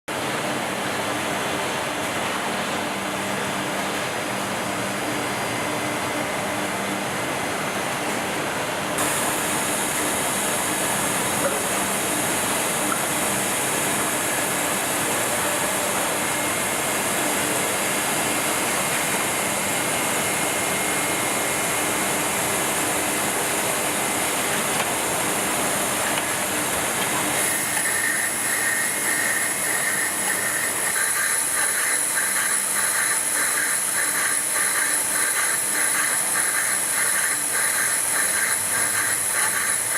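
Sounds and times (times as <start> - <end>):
lathe machine running: 3.0 - 39.9
hiss: 27.4 - 39.9.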